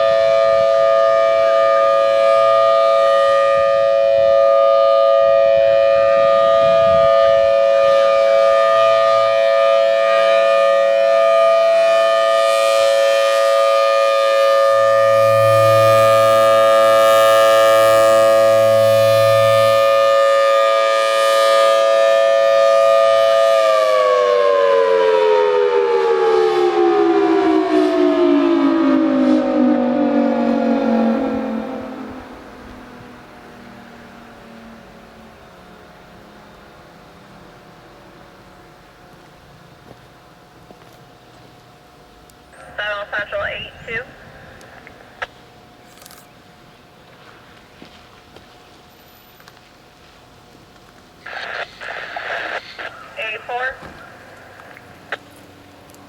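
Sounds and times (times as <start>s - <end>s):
warning siren two-tone chord: 0.0s - 37.4s.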